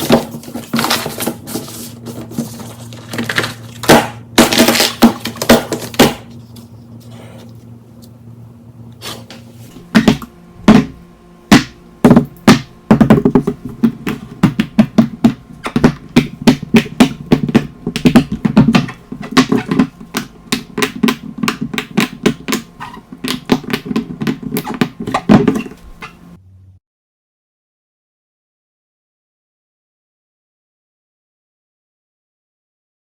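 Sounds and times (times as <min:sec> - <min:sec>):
fidget toys popping and tapping: 0:11.5 - 0:25.5.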